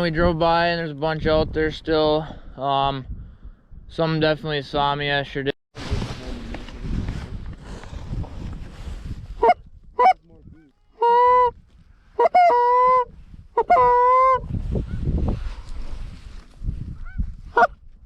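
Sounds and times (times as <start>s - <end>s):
goose honking: 9.4s - 11.5s, 12.2s - 14.4s
goose clucks: 12.2s - 14.4s.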